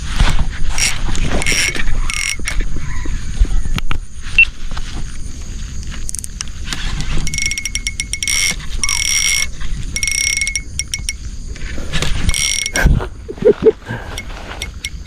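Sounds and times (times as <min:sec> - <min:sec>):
fishing reel clicking whirr: 0:00.8 - 0:02.6, 0:07.2 - 0:11.2, 0:12.3 - 0:12.8.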